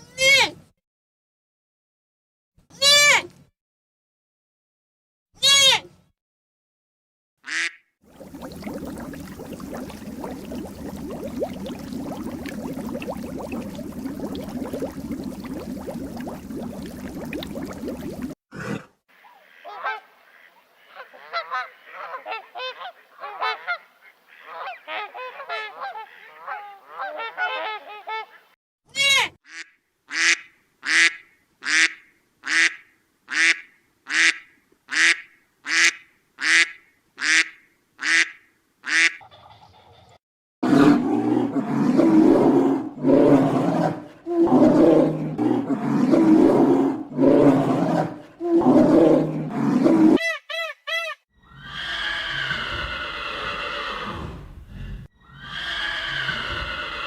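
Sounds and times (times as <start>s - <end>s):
rough grunting calls: 8.1s - 18.4s.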